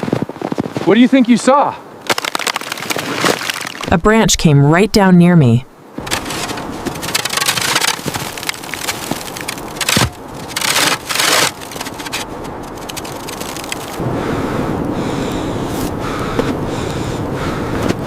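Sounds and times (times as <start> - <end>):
crunching and scraping: 6.0 - 14.0
sharp crack: 6.0 - 14.1.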